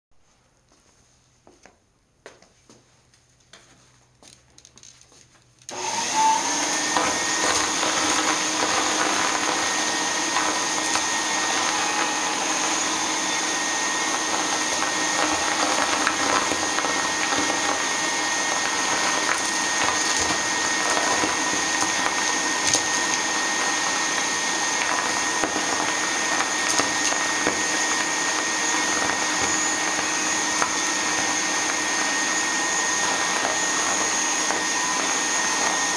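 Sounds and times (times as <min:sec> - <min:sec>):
vacuum cleaner motor whining: 0:05.7 - 0:35.9.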